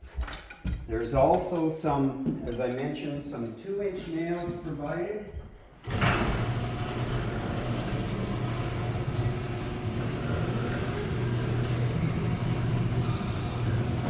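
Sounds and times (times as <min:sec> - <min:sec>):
engine running: 0:05.9 - 0:14.0.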